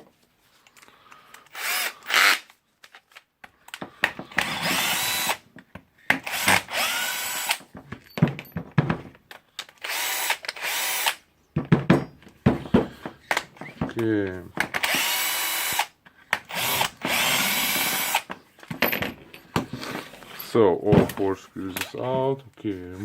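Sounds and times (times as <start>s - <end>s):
power drill motor whining: 1.4s - 2.5s, 4.3s - 5.4s, 6.2s - 7.6s, 9.8s - 11.2s, 14.7s - 18.3s.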